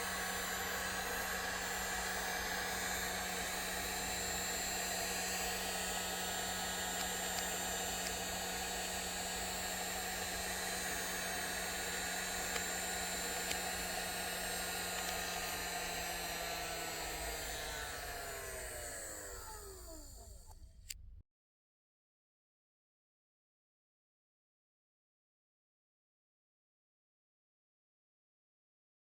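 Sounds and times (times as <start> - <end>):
hot-air blower running: 0.0 - 21.0.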